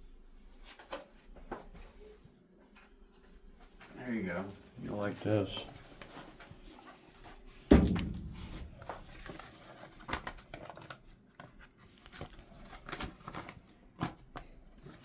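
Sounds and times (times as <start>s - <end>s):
heavy thump: 7.7s - 9.3s.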